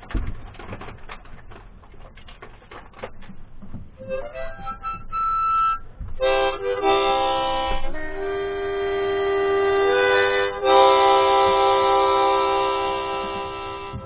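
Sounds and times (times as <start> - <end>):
harmonica chords: 4.0 - 14.0.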